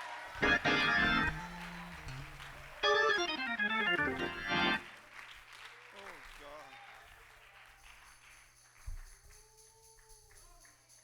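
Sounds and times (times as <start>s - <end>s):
organ playing chords: 0.3s - 4.9s.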